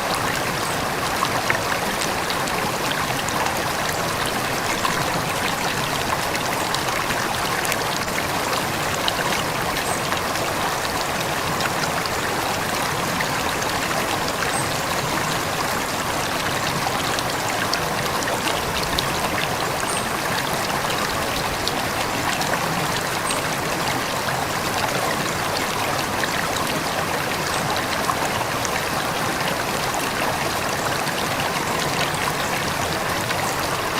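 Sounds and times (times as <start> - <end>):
stream babbling over stones: 0.0 - 33.9.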